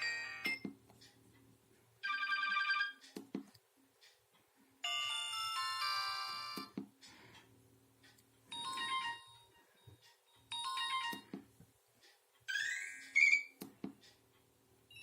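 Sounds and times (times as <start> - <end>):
phone ringtone chiming: 0.0 - 0.6, 2.0 - 3.0, 4.8 - 6.7, 8.5 - 9.9, 10.5 - 11.3.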